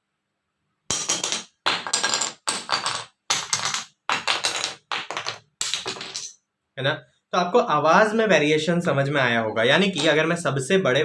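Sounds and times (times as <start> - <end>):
wooden sticks clattering on floor: 0.9 - 6.3.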